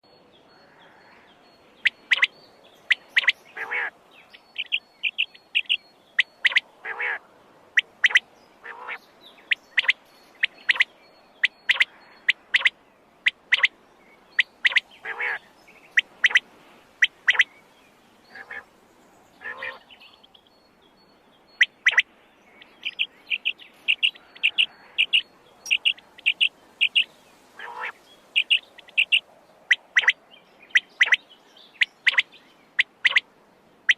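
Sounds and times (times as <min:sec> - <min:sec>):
quail calling: 0:01.8 - 0:07.2, 0:07.8 - 0:13.7, 0:14.4 - 0:15.4, 0:16.0 - 0:16.4, 0:17.0 - 0:17.5, 0:18.3 - 0:18.7, 0:19.4 - 0:19.9, 0:21.6 - 0:22.0, 0:22.6 - 0:31.2, 0:31.8 - 0:33.2.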